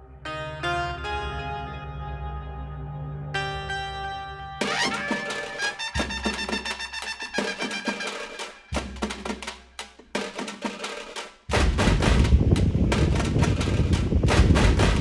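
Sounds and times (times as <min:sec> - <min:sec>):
upbeat music with percussion beat: 0:04.6 - 0:15.0.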